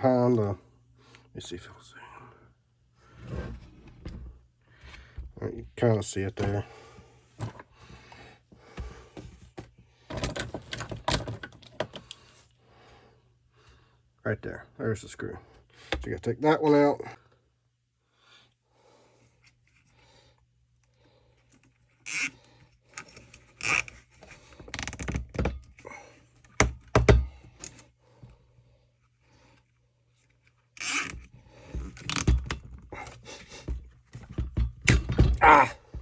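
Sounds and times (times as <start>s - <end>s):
hand tool on plastic housing: 21.6s - 25.8s, 30.4s - 36.0s.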